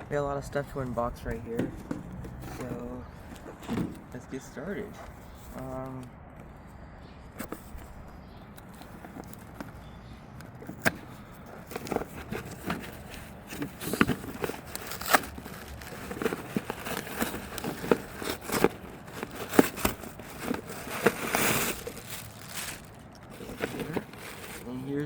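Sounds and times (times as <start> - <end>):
packaging being opened by hand: 10.5 - 25.0.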